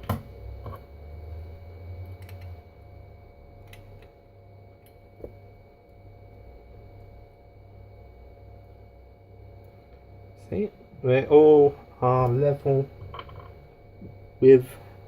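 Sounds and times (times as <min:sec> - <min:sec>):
steady low hum: 0:00.0 - 0:15.0
components clicking into circuit board: 0:02.2 - 0:02.6.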